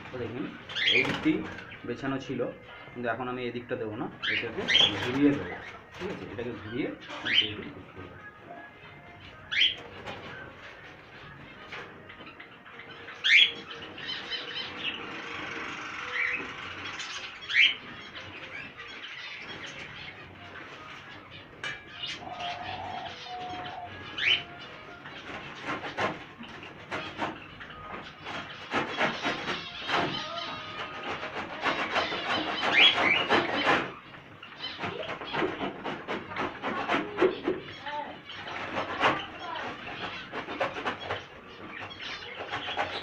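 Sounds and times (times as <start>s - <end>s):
finches chirping: 0.0s - 43.0s
cage tray knocking and scraping: 25.0s - 43.0s.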